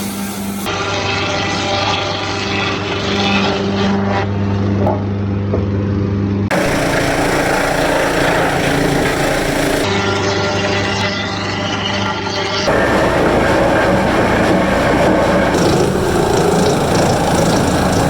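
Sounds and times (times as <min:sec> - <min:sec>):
machinery motor hum: 0:06.5 - 0:10.2, 0:12.6 - 0:18.0
rough machine noise: 0:06.5 - 0:18.0.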